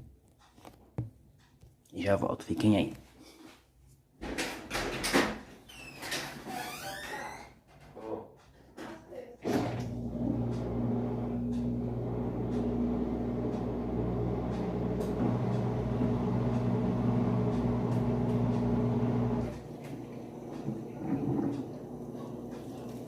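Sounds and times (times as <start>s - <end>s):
washing machine humming: 9.4s - 23.0s.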